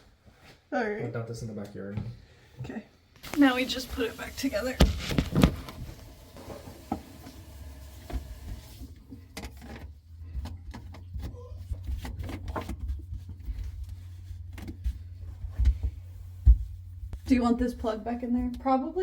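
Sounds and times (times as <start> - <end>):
low steady hum: 5.7 - 19.0.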